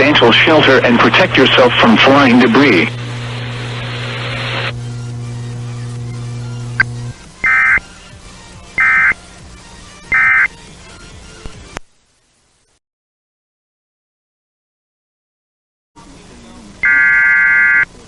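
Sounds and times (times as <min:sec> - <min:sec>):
steady low hum: 0:00.0 - 0:10.0
short bursts of data tones: 0:06.8 - 0:07.8, 0:08.8 - 0:09.2, 0:10.1 - 0:10.5, 0:16.8 - 0:17.9.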